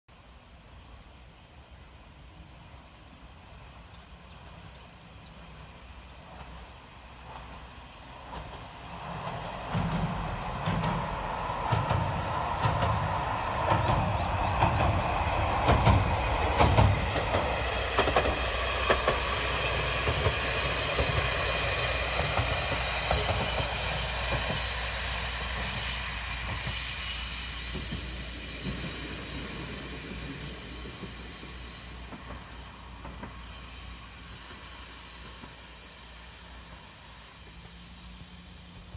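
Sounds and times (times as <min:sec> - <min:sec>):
diesel railcar passing: 0:00.2 - 0:38.9
high wheel squeal: 0:19.9 - 0:36.1.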